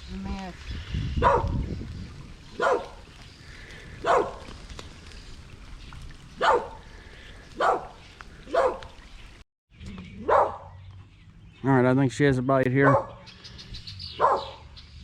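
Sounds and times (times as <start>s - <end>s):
dogs barking: 1.2s - 1.6s, 2.5s - 3.1s, 4.0s - 4.5s, 6.4s - 6.8s, 7.6s - 9.0s, 10.2s - 10.8s, 12.8s - 13.3s, 14.2s - 14.7s.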